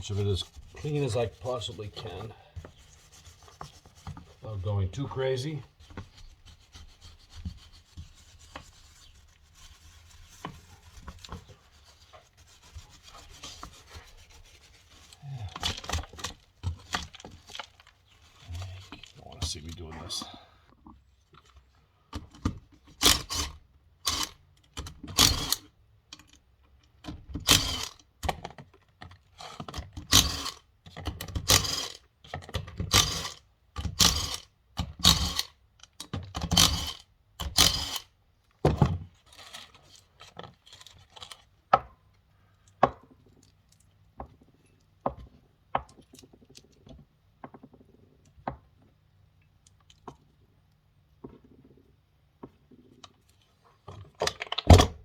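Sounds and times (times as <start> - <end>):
scraping grime off metal: 0.0 - 4.5.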